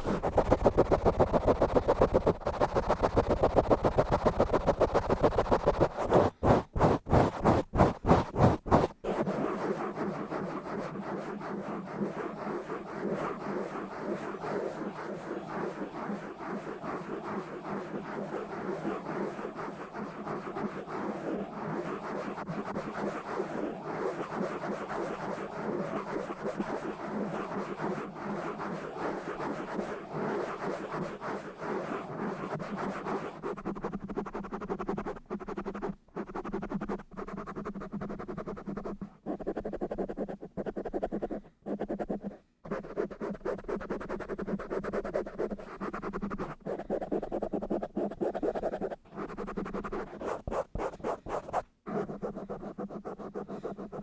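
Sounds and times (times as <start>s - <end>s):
scratching on microphone: 0.0s - 54.0s.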